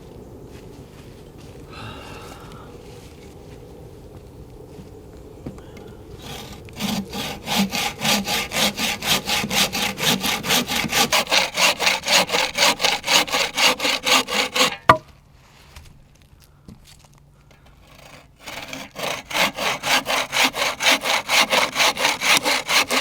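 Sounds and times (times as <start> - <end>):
hand saw cutting wood: 6.2 - 15.0, 17.8 - 23.0.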